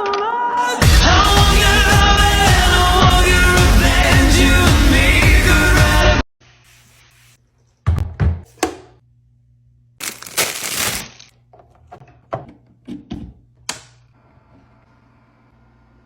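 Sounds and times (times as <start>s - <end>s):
rustling and crinkling: 10.0s - 11.3s.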